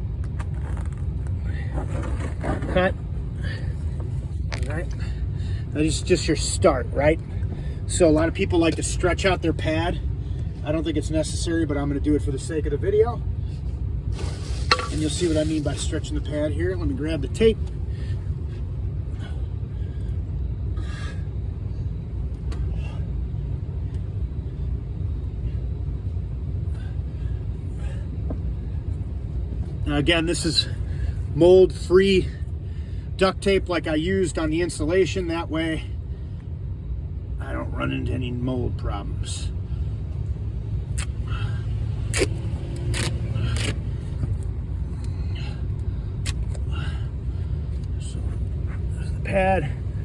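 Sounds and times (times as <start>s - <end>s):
steady low rumble: 0.0s - 50.0s
brief rustling or tearing: 42.1s - 43.8s
duct tape being pulled: 42.1s - 43.8s.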